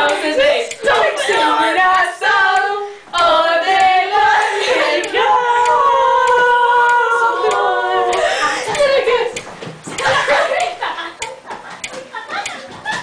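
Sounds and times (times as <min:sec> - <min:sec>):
person singing: 0:00.0 - 0:09.4.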